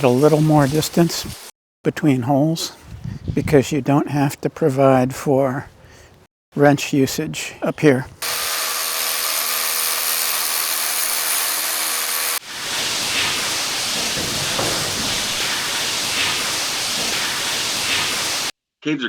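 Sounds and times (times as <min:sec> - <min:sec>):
steady rushing hiss: 0:00.0 - 0:01.5, 0:12.4 - 0:18.5
power drill boring into rock: 0:08.2 - 0:12.4.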